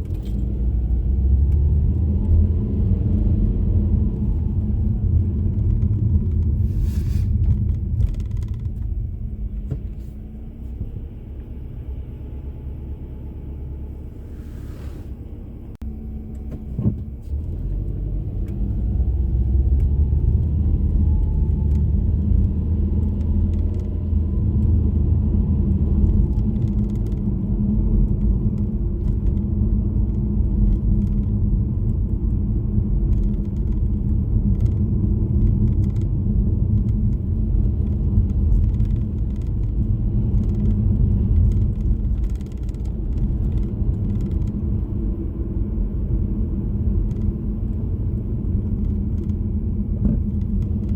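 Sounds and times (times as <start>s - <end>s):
car engine and road noise: 0.0s - 50.9s.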